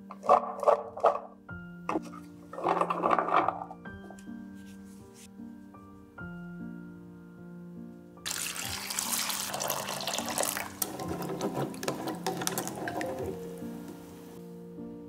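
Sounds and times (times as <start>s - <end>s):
small splashes and clatters: 8.3s - 14.0s
tap water running into sink: 8.3s - 14.0s.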